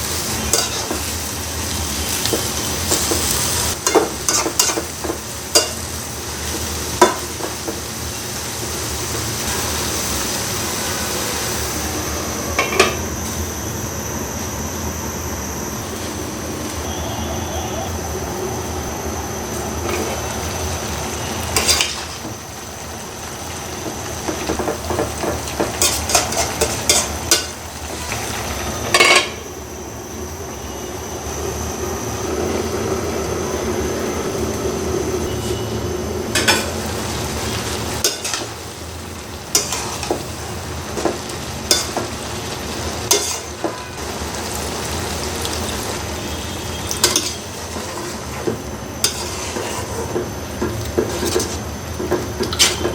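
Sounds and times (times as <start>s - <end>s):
food sizzling in a pan: 0.0s - 13.6s, 18.8s - 52.9s
metal spatula scraping pan: 43.1s - 43.5s, 49.0s - 50.2s, 51.0s - 51.6s.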